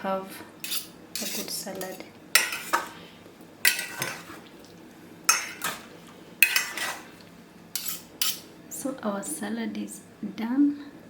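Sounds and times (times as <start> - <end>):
spoon scraping salad bowl: 0.6 - 3.0, 3.6 - 4.5, 5.3 - 8.5.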